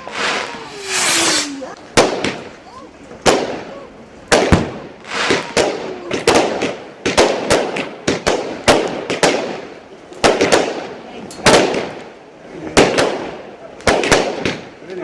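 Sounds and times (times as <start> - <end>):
fireworks banging: 0.0 - 2.6
fireworks crackling: 0.0 - 3.7.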